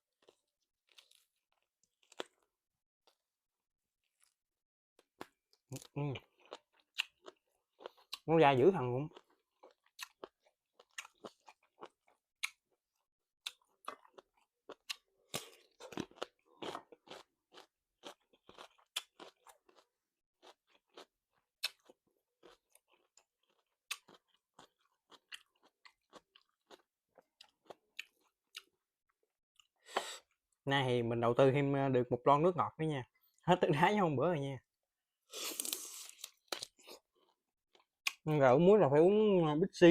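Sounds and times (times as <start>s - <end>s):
chewing with wet clicks: 5.0s - 8.3s, 9.1s - 28.9s, 36.2s - 38.2s.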